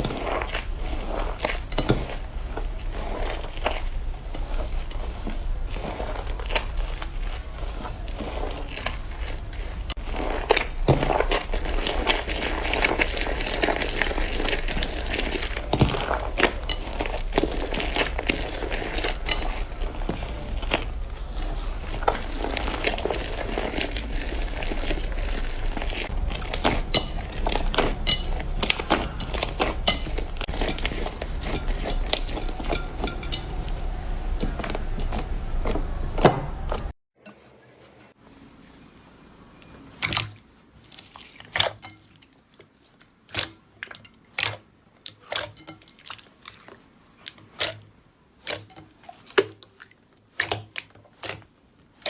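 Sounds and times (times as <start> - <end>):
slime crackling and popping: 0.0 - 33.6.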